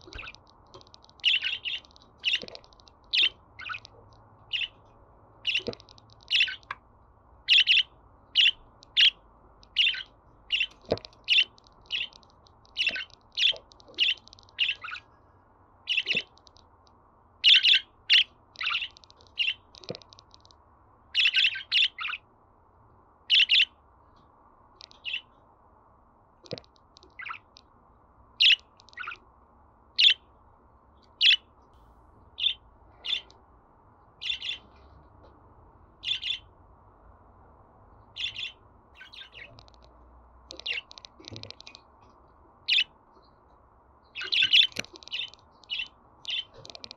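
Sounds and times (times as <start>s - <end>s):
budgerigar chirping: 0.0s - 0.4s, 1.2s - 3.9s, 4.5s - 4.8s, 5.4s - 6.8s, 7.5s - 12.2s, 12.8s - 15.1s, 15.9s - 16.4s, 17.4s - 19.7s, 21.2s - 22.2s, 23.3s - 23.7s, 27.1s - 27.6s, 28.4s - 29.2s, 30.0s - 30.2s, 31.2s - 33.3s, 34.2s - 34.7s, 36.0s - 36.5s, 38.2s - 39.6s, 40.5s - 40.9s, 42.7s - 42.9s, 44.1s - 46.6s.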